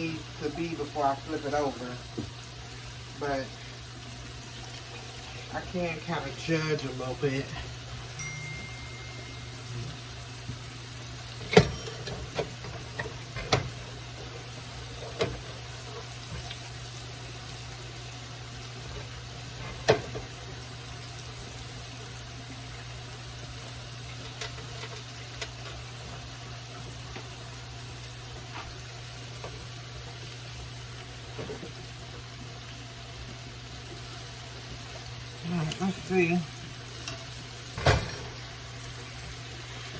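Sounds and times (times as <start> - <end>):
low steady hum: 0.0 - 19.0
mushrooms sizzling in oil: 0.0 - 39.9.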